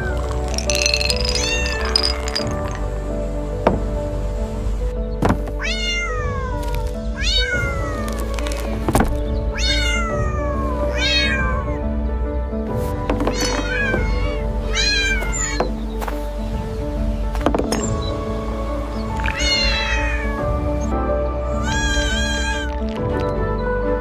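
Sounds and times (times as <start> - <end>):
background music: 0.0 - 24.0
kitten meowing: 5.6 - 8.4, 9.5 - 11.8, 13.4 - 15.7, 19.2 - 20.4, 21.6 - 22.8.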